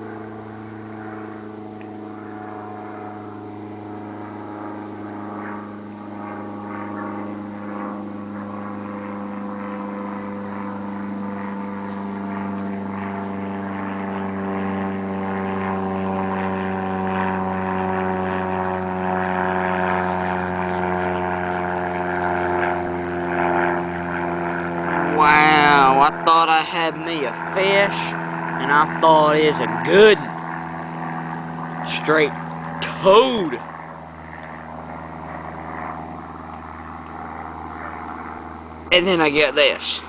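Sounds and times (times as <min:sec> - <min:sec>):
steady engine drone: 0:15.8 - 0:34.1.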